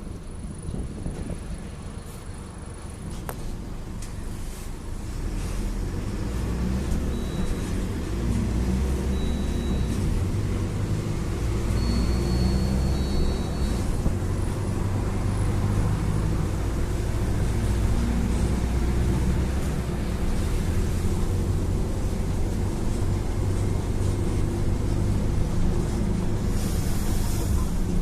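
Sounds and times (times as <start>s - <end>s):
bus diesel engine running: 0.0s - 28.0s
faint high whistle: 11.7s - 13.8s.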